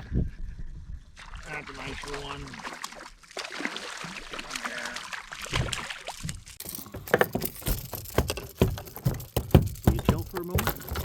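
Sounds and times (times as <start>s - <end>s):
fish thrashing and splashing: 1.2s - 11.0s
sharp knocks and rattles: 6.6s - 11.0s.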